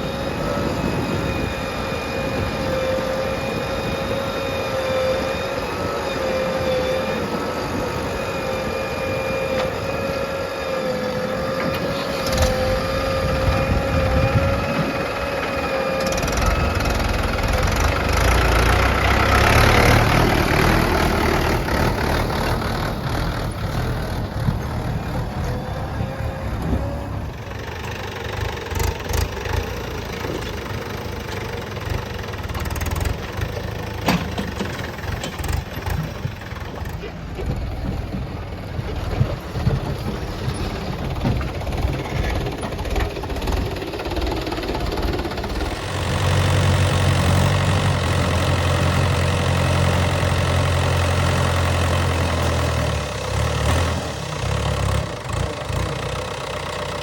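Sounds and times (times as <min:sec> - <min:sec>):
diesel engines running: 0:00.0 - 0:57.0.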